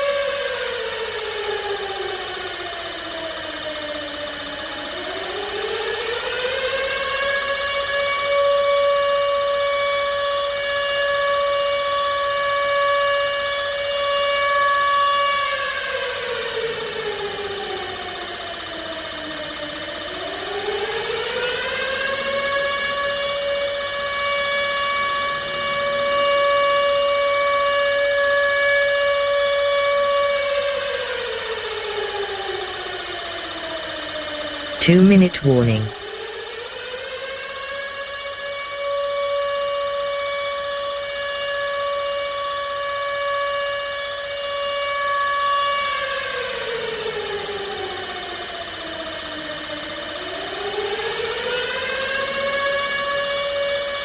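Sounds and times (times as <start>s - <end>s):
civil defence siren: 5.1s - 16.1s.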